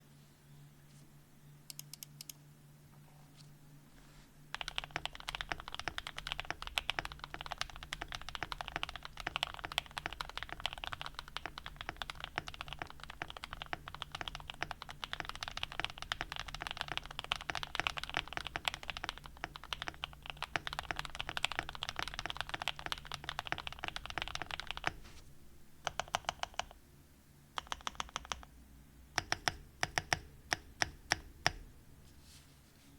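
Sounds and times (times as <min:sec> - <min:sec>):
typing on mechanical keyboard: 0:04.5 - 0:25.0, 0:25.8 - 0:26.8, 0:27.6 - 0:28.5, 0:29.2 - 0:31.2.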